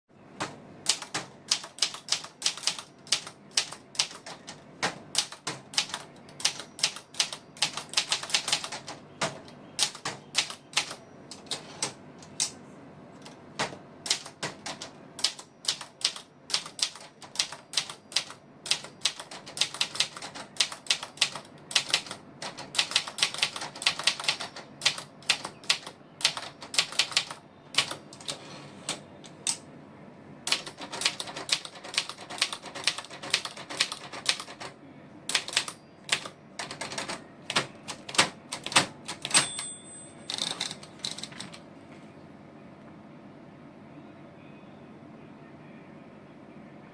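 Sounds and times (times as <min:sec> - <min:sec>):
manual typewriter key strikes: 0:00.8 - 0:12.6, 0:35.3 - 0:41.5.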